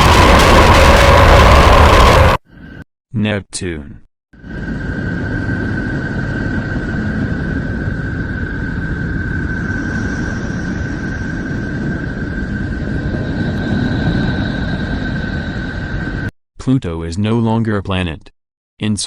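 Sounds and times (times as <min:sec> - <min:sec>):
low rumbling noise: 0:00.0 - 0:02.8, 0:04.4 - 0:16.3
steady high-pitched tone: 0:04.4 - 0:16.3.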